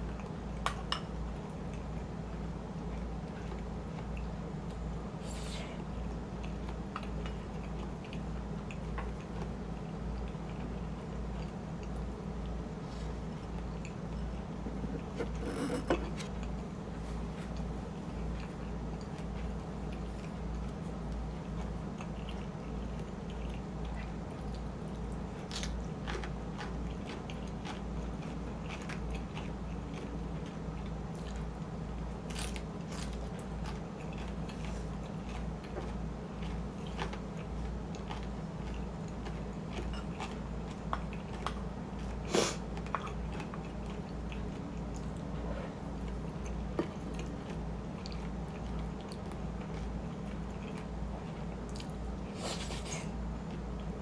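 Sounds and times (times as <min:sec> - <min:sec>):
steady low hum: 0:00.0 - 0:54.0
close-up chewing and biting: 0:13.0 - 0:31.6, 0:32.2 - 0:45.4.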